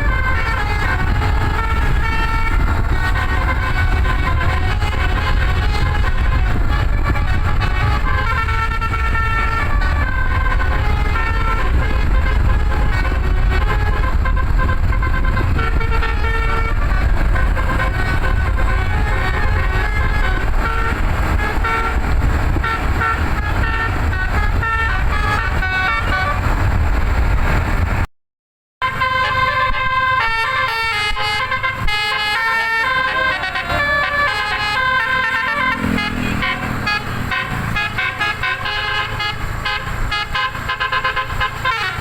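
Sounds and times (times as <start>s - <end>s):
multi-tone bus horn melody: 0.0s - 27.8s, 28.8s - 42.0s
low rumble: 0.0s - 28.1s.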